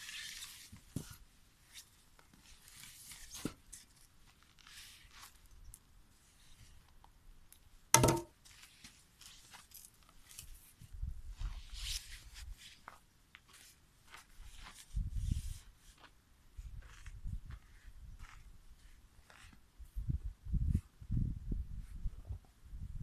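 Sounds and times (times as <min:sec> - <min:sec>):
handling knocks and clicks: 0:08.0 - 0:08.3.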